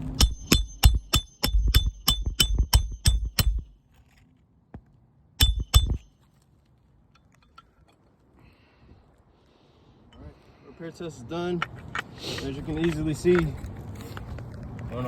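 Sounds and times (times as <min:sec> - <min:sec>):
hammer striking roofing nail: 0:00.0 - 0:03.7, 0:05.4 - 0:06.1.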